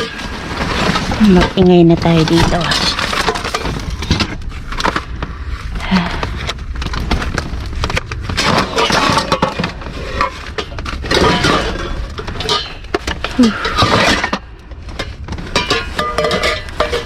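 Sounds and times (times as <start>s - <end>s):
trash clattering and clinking: 0.0s - 17.0s.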